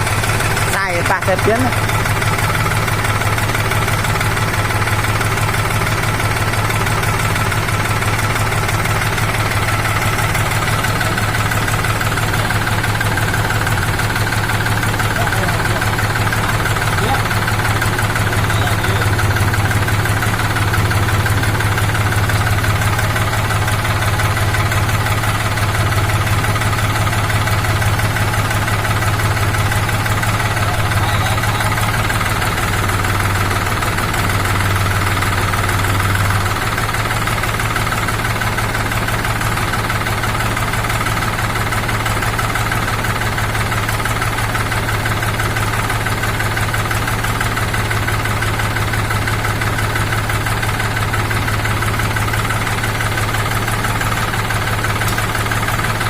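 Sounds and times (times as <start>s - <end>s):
tractor diesel engine running: 0.0s - 56.0s.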